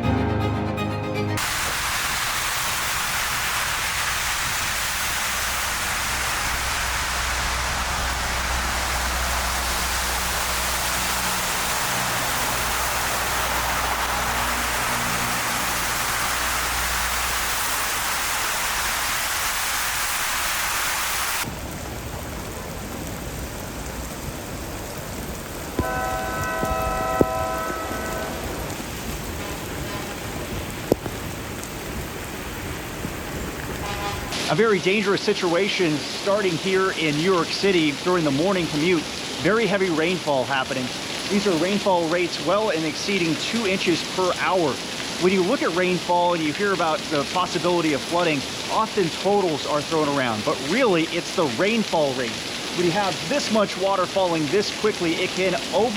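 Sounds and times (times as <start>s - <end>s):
heavy rain pouring: 1.4s - 55.9s
low rumble: 5.2s - 17.5s.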